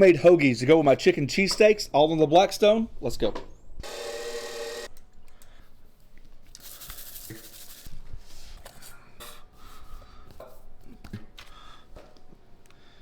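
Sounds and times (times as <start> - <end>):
short hiss: 6.5 - 8.0.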